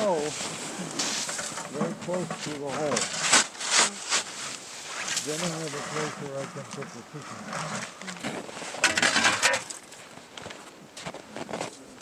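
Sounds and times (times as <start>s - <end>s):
snow crunching: 0.0s - 9.3s.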